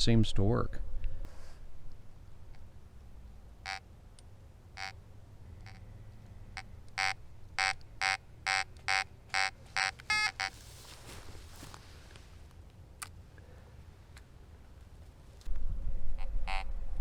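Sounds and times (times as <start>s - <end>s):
metal detector beeping: 3.6s - 3.9s, 4.8s - 5.0s, 5.6s - 5.8s, 6.6s - 10.6s, 16.4s - 16.7s.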